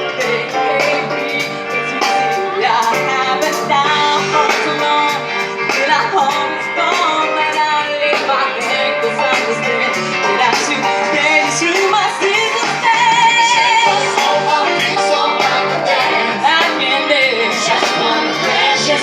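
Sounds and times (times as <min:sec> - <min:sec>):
live band music: 0:00.0 - 0:19.0
person singing with vibrato: 0:00.0 - 0:19.0.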